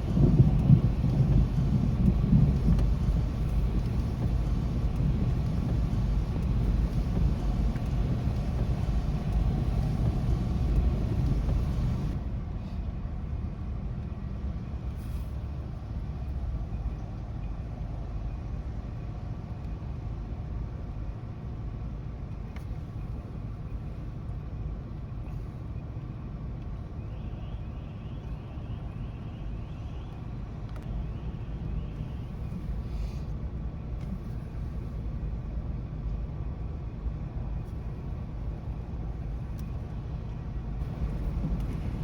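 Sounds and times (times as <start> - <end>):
rolling thunder: 0.0 - 12.2, 40.8 - 42.0.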